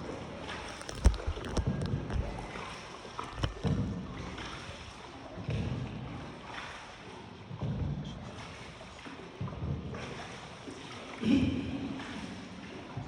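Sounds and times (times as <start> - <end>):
paddle splashing in water: 0.3 - 7.3.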